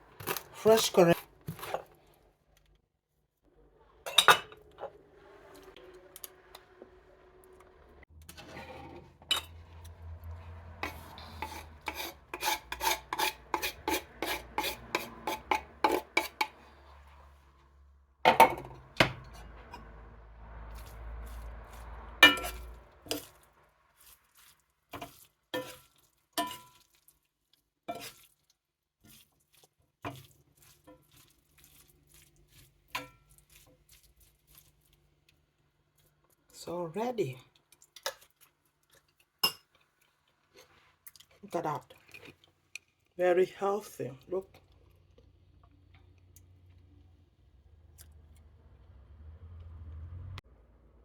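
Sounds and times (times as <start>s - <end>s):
metal utensils clinking on pot: 4.0s - 5.0s, 9.2s - 9.6s, 22.2s - 23.4s, 25.0s - 26.8s.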